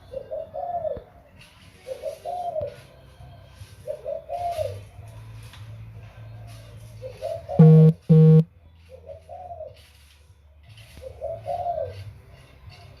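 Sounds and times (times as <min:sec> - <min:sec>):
dove cooing: 0:00.0 - 0:01.2, 0:01.8 - 0:02.8, 0:03.8 - 0:04.9, 0:07.0 - 0:08.4, 0:09.0 - 0:09.8, 0:11.0 - 0:12.0
loud flat buzzing tones: 0:07.6 - 0:08.5.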